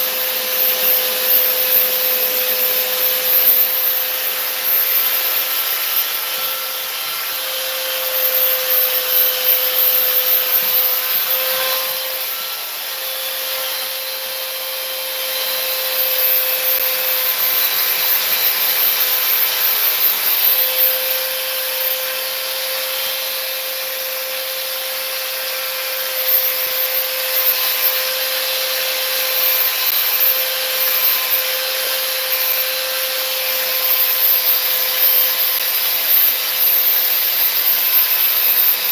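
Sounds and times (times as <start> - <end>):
belt sander sanding fiberglass: 0.0 - 38.9.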